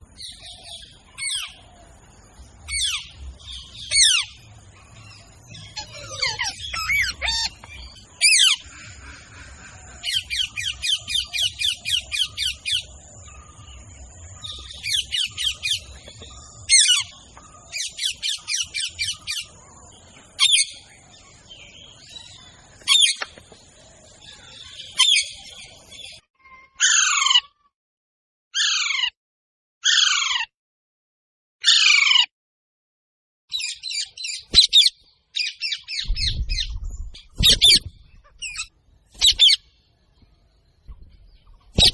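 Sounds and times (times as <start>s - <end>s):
small birds chirping: 0.0s - 27.7s, 33.5s - 41.9s
loud falling bird screeches: 37.4s - 39.6s.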